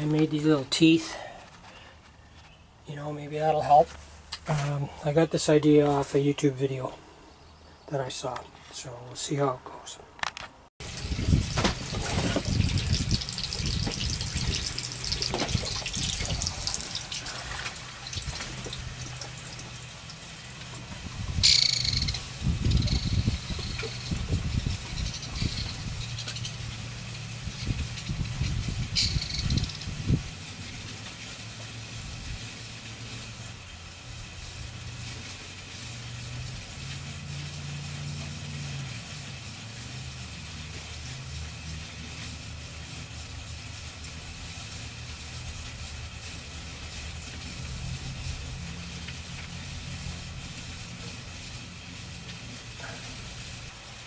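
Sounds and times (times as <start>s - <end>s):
constant hiss: 0.0s - 54.0s
hose water running into pipe: 10.8s - 54.0s.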